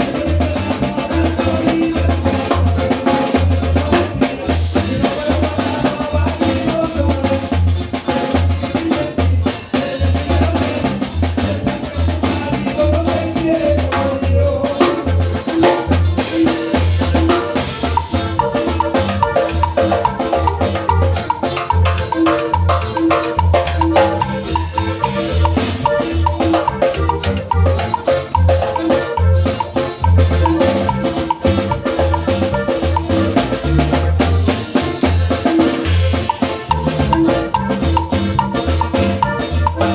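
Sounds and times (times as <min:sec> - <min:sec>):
instrumental dance music: 0:11.2 - 0:39.9.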